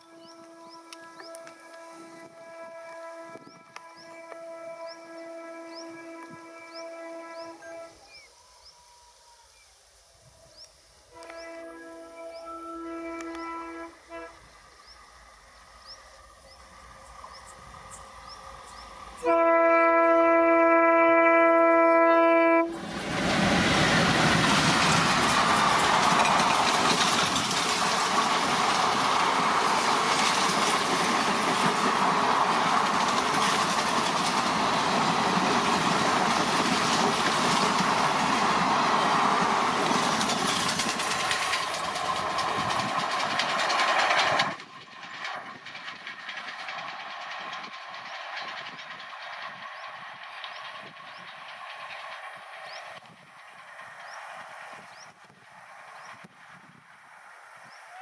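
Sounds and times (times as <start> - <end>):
train horn blast: 0.0 - 8.2, 11.1 - 14.6, 19.2 - 27.2
diesel locomotive engine noise: 10.2 - 58.0
wheels clattering over rail joints: 22.8 - 55.4.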